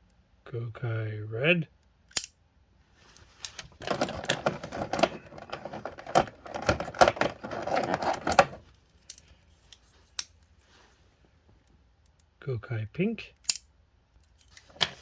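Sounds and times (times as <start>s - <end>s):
metal toys rattling in packaging: 3.7s - 8.6s.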